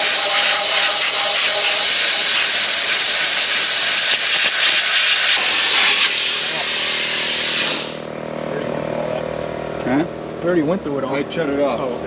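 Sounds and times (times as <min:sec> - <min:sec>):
sandblaster hissing: 0:00.0 - 0:08.1.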